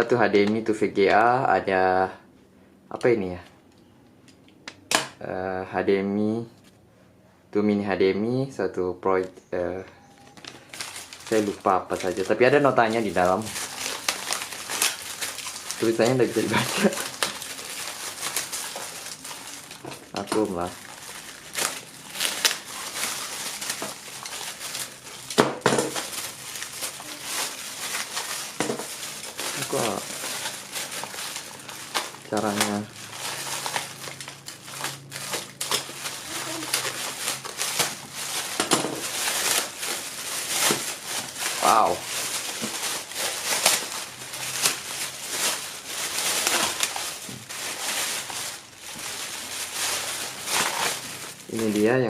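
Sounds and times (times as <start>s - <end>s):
plastic packaging crinkling: 10.2s - 52.0s.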